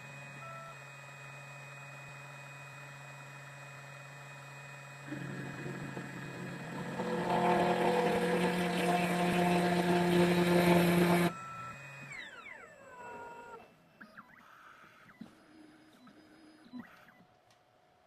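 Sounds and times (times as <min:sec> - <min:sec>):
key cutting machine spindle: 0:05.1 - 0:11.3.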